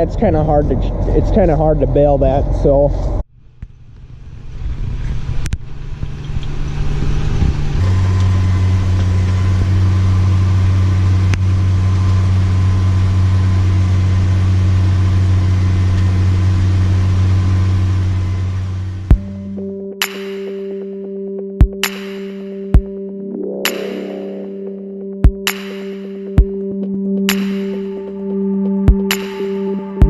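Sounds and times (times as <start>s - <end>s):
vehicle engine humming: 0.0s - 21.9s.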